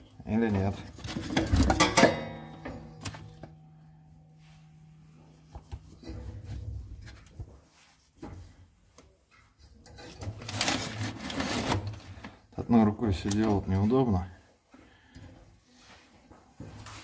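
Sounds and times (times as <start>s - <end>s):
knocks and handling sounds: 0.0s - 13.9s
ringing metal clank: 1.7s - 4.5s.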